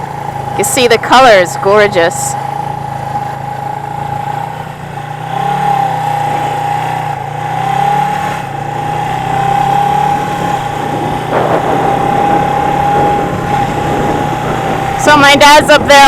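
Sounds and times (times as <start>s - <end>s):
motorcycle engine running: 0.0s - 16.0s
rough rush of noise: 10.0s - 16.0s.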